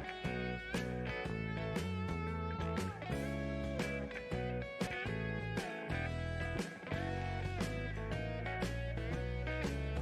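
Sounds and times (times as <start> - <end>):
rock music with electric guitar: 0.0 - 10.0.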